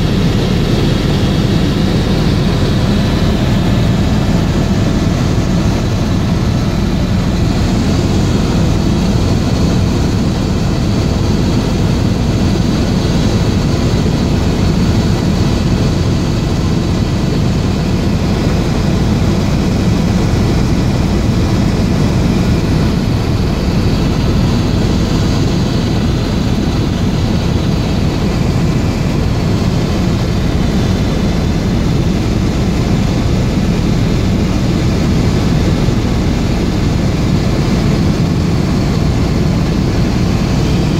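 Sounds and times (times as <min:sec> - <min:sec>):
helicopter engine and rotor drone: 0:00.0 - 0:40.9.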